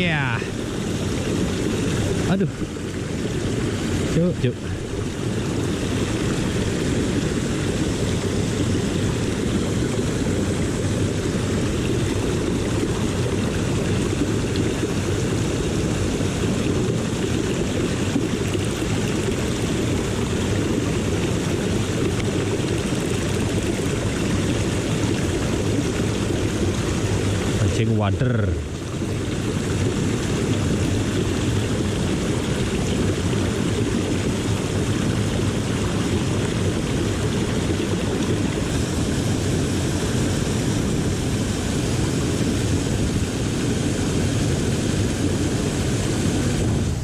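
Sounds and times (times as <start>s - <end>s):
river flowing: 0.0s - 47.0s.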